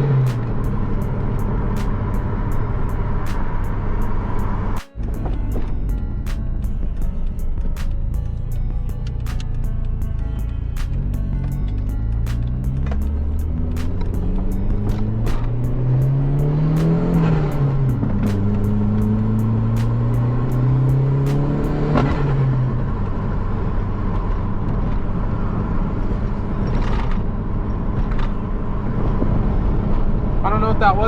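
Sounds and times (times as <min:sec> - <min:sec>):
car engine accelerating: 0:00.0 - 0:31.0
road noise: 0:00.0 - 0:31.0.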